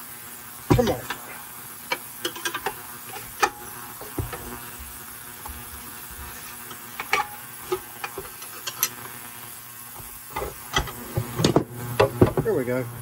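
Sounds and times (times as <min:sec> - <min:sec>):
faint steady buzz: 0:00.0 - 0:13.0
metal parts and tools clicking: 0:06.7 - 0:09.1.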